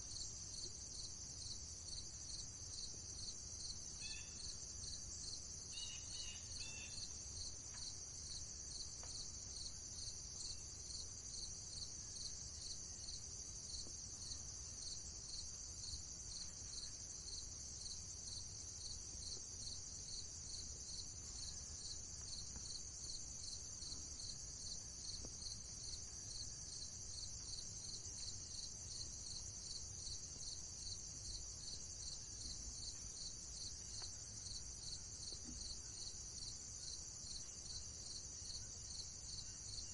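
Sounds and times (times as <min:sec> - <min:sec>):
crickets chirping: 0:00.0 - 0:39.9
faint bird chirps: 0:04.0 - 0:04.5, 0:05.7 - 0:07.1.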